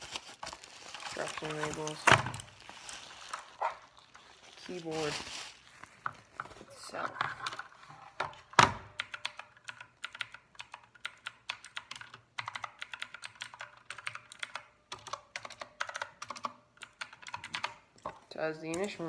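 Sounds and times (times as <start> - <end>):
mechanical keyboard keys clicking: 8.8 - 17.8.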